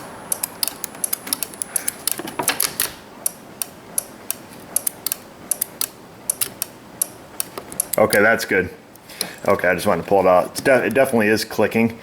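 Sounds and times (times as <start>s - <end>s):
starter relay clicking: 0.0s - 8.3s.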